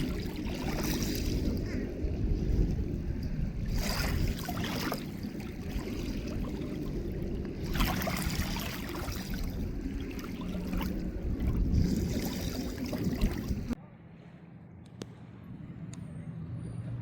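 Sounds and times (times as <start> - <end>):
water lapping and trickling: 0.0 - 14.4
wind rumble on microphone: 0.0 - 17.0.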